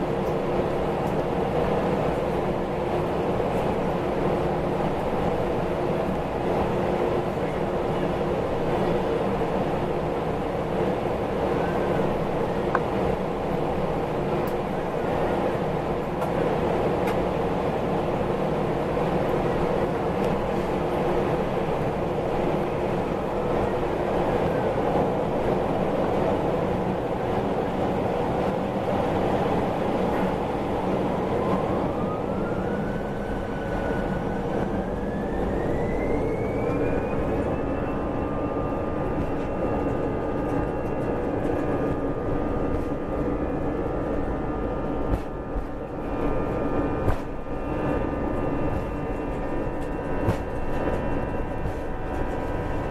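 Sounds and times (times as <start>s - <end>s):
jet engines rumbling: 0.0s - 52.9s
jet engine whine rising: 17.8s - 52.9s.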